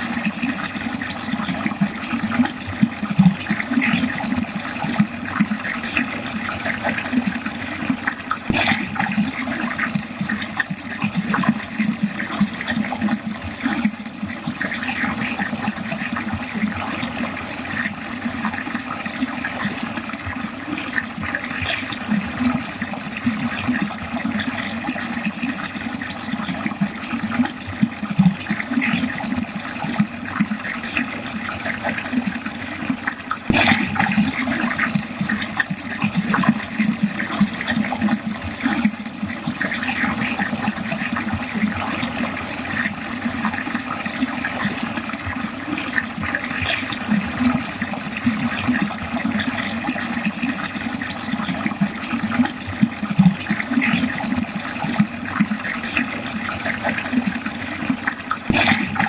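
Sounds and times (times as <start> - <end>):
water running down a drain: 0.0 - 59.0.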